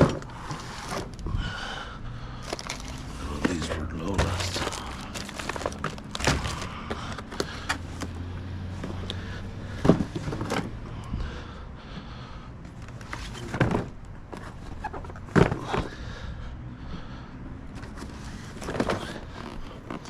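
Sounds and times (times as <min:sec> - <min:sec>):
snack packaging being handled: 0:02.4 - 0:08.3.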